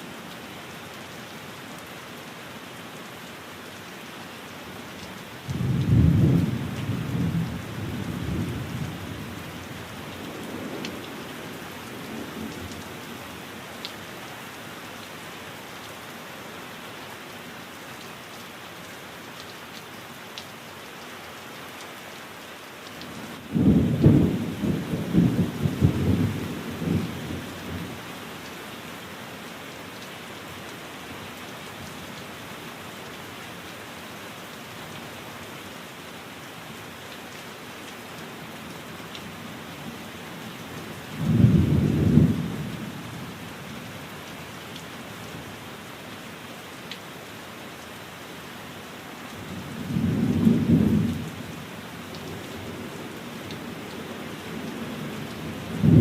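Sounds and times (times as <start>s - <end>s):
steady rain: 0.0s - 56.0s
thunder rumbling: 55.7s - 56.0s.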